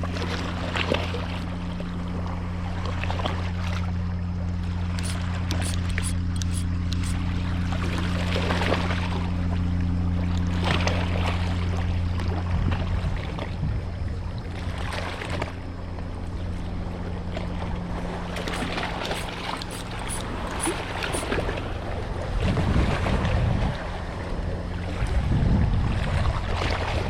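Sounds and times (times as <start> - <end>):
boat engine humming: 0.0 - 27.0
water splashing against hull: 0.0 - 27.0.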